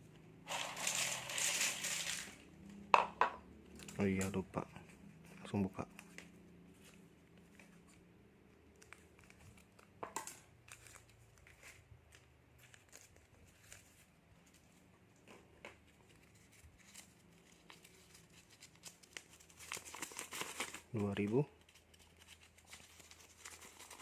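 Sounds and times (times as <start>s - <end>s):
plastic snack packet crinkling: 0.5s - 2.5s.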